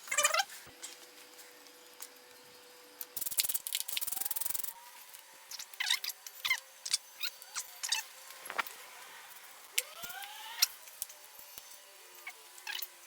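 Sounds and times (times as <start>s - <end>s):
ratchet wrench clicking: 3.2s - 4.7s.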